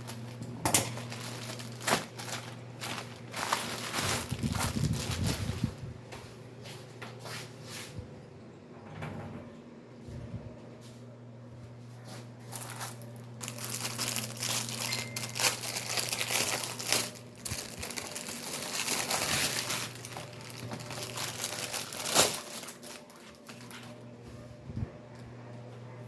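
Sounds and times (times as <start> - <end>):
plastic packaging crinkling: 0.0 - 5.9, 12.4 - 24.1.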